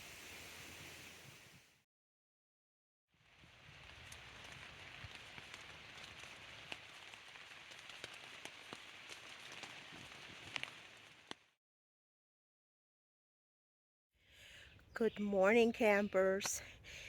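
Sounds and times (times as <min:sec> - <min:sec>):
steady rain hiss: 0:00.0 - 0:01.8, 0:03.2 - 0:11.4
raindrops ticking on surface: 0:03.4 - 0:11.5.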